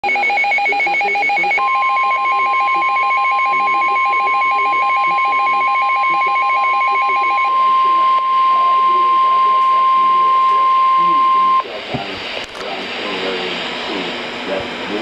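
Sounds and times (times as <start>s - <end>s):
steady alarm tone: 0.0s - 11.8s.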